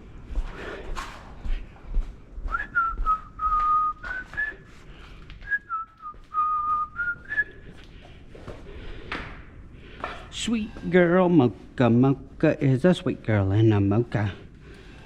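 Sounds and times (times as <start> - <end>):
person whistling a tune: 2.5 - 4.7, 5.4 - 7.6.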